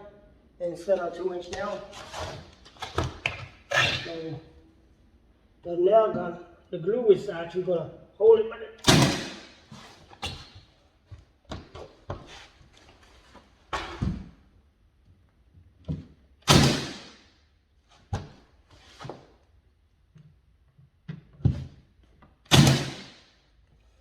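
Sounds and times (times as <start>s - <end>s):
nail gun firing: 8.8s - 9.6s, 16.4s - 17.2s, 22.5s - 23.3s.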